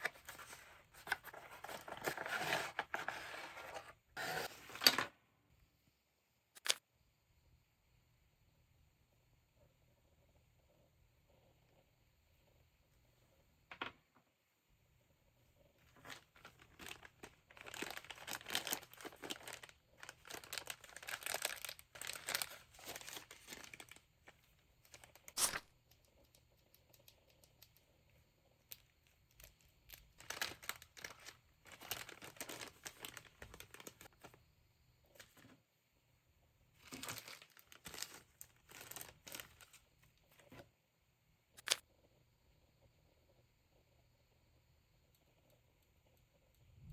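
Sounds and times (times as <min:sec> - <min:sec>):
packaging crinkling and tearing: 0:00.0 - 0:05.1, 0:15.9 - 0:24.0, 0:30.2 - 0:34.2, 0:36.8 - 0:39.8.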